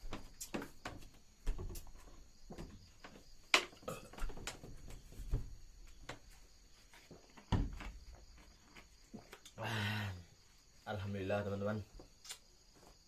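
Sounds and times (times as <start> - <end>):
night insects chirring: 0.0 - 13.0.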